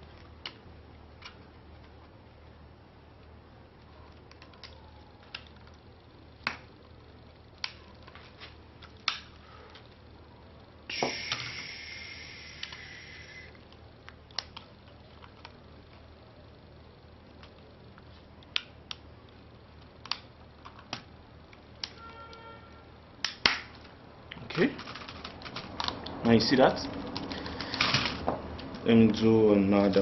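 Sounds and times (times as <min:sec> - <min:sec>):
keycaps clicking: 0:04.1 - 0:05.8, 0:24.6 - 0:27.9.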